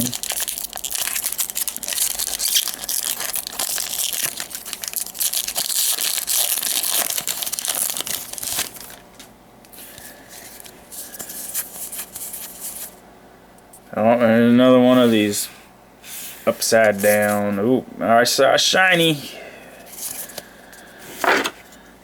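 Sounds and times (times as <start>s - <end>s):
foil wrapper crinkling and tearing: 0.0s - 9.3s.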